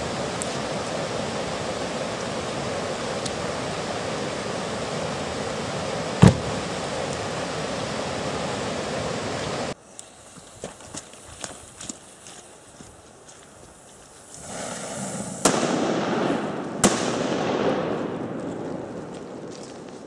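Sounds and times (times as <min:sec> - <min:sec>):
sharp bang: 0:06.2 - 0:06.6.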